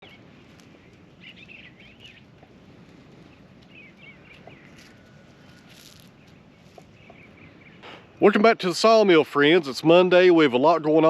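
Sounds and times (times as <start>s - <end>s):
small birds chirping: 0.0s - 8.3s
faint outdoor hiss: 0.0s - 11.0s.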